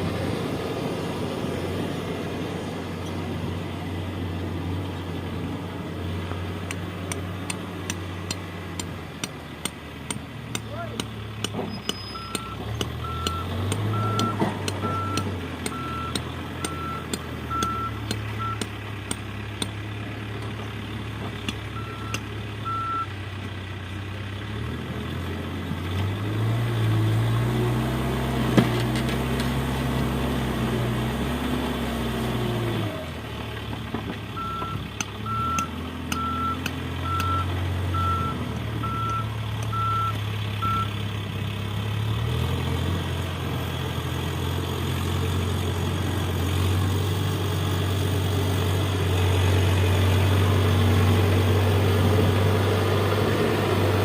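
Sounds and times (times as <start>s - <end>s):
diesel engine running: 0.0s - 54.0s
sharp metallic clicks: 6.6s - 19.8s, 34.6s - 37.5s
reversing alarm beeps: 11.8s - 18.7s, 21.8s - 23.1s, 34.4s - 40.9s.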